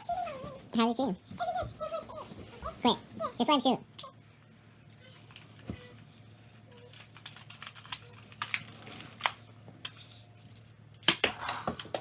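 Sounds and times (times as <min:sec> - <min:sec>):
toy blaster plastic clicks: 0:06.9 - 0:10.0.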